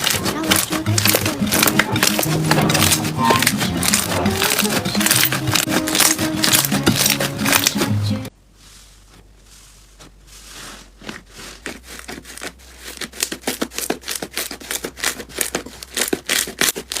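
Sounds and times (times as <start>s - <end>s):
slime popping and crackling: 0.0s - 8.0s, 11.4s - 17.0s.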